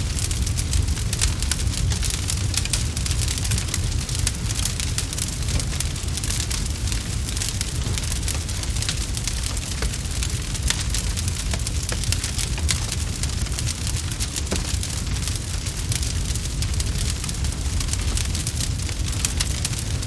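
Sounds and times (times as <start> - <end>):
low rumble: 0.0 - 16.0
wood fire crackling: 0.0 - 20.0.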